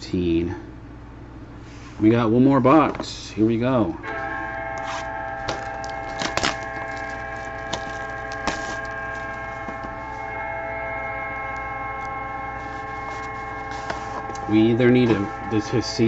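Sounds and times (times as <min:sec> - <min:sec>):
drone of held tones: 0:03.6 - 0:16.0
card box clicks and snaps: 0:05.5 - 0:09.0.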